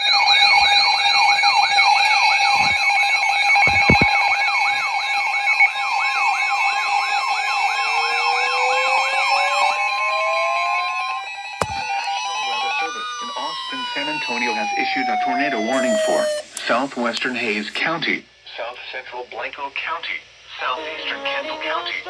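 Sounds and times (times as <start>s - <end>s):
electronic siren wailing: 0.0s - 3.0s, 3.6s - 16.5s
steady alarm tones: 0.0s - 16.4s.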